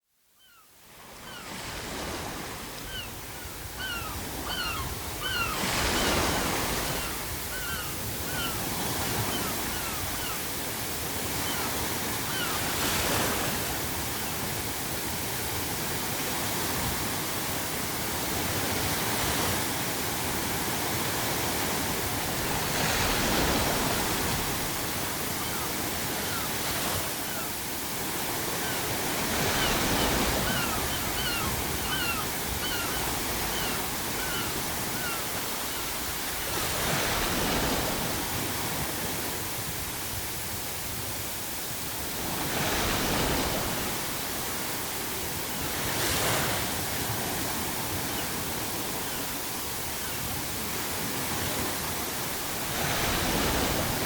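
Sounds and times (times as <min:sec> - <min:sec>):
sea waves crashing: 0:01.4 - 0:54.0
seagulls crying: 0:02.8 - 0:10.6, 0:11.2 - 0:13.3, 0:25.2 - 0:27.7, 0:28.4 - 0:36.1.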